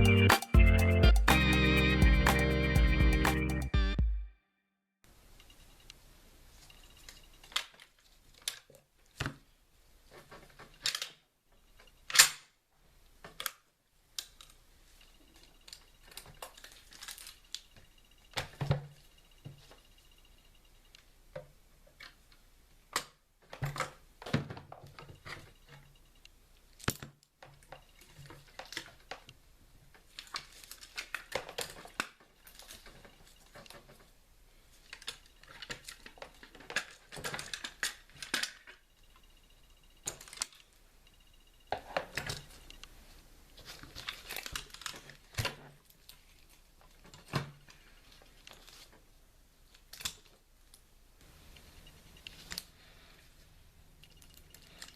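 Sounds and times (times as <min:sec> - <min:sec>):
rustling: 0:42.1 - 0:50.4.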